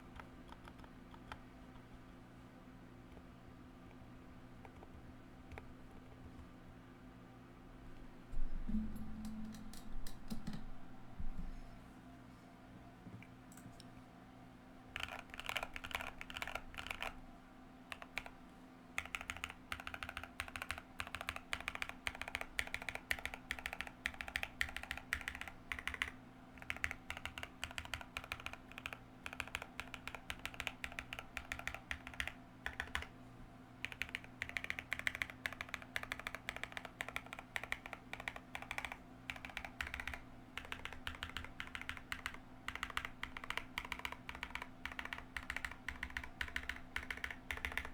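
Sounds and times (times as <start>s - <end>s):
typing on mechanical keyboard: 0.1s - 1.4s, 15.0s - 17.2s, 17.9s - 18.4s, 19.0s - 33.1s, 33.8s - 47.9s.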